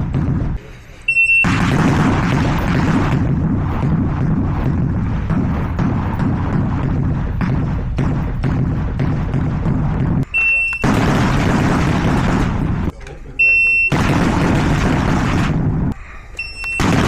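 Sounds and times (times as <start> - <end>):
shot timer beeping: 1.1 - 1.6, 10.2 - 11.0, 13.4 - 14.0, 16.4 - 16.9.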